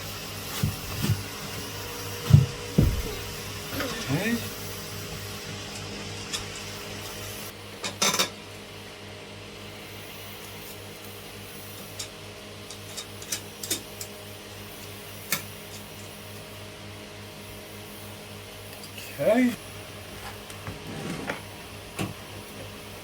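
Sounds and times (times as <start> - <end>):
steady low hum: 0.0 - 7.9.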